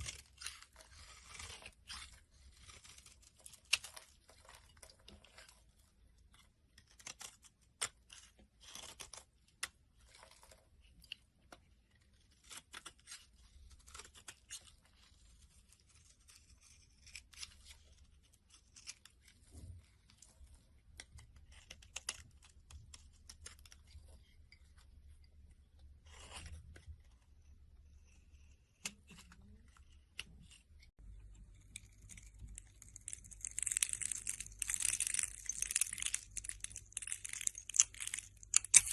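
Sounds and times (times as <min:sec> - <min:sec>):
blade scraping soap: 0:00.0 - 0:05.7, 0:11.9 - 0:19.4.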